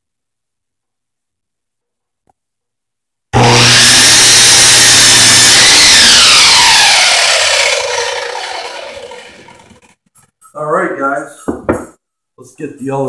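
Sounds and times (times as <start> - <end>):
miter saw cutting wood: 3.4 - 9.9
saw blade winding down: 3.4 - 9.9.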